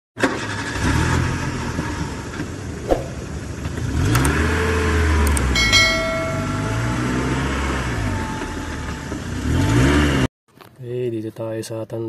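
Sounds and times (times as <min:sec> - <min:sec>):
car engine revving: 0:00.9 - 0:05.6
metallic clink with ringing: 0:05.4 - 0:07.4.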